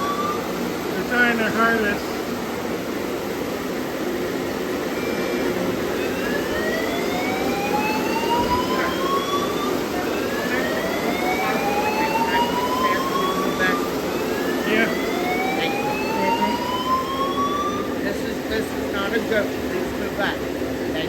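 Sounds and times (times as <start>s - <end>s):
rising alarm tone: 0.0s - 1.8s, 4.3s - 18.5s.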